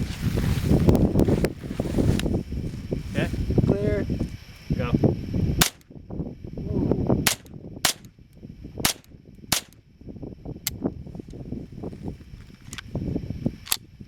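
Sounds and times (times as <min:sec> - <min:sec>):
rifle shots: 0:05.6 - 0:05.8, 0:07.3 - 0:08.1, 0:08.8 - 0:09.8.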